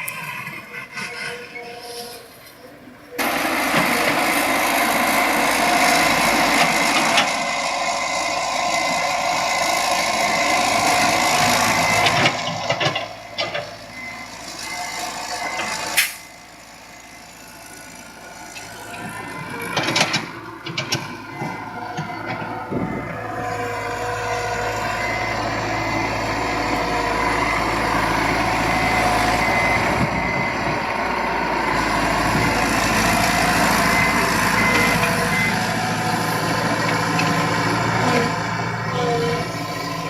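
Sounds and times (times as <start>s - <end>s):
excavator engine running: 0.0s - 40.0s.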